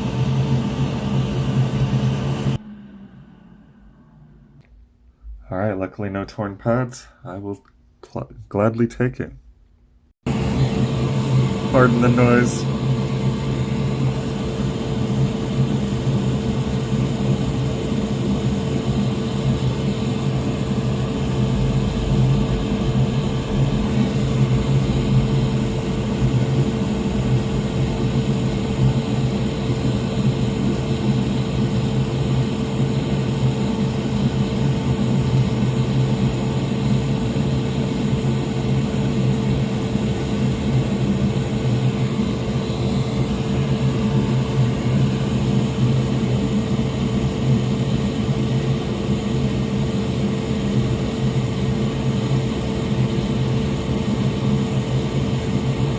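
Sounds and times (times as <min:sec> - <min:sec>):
electric blower whirring hum: 0:00.0 - 0:05.0, 0:10.3 - 0:55.9.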